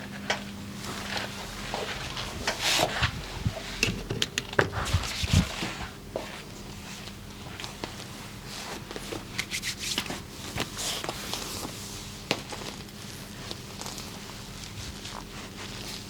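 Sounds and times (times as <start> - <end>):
hands rubbing on skin and clothing: 4.7 - 6.4, 8.6 - 11.7.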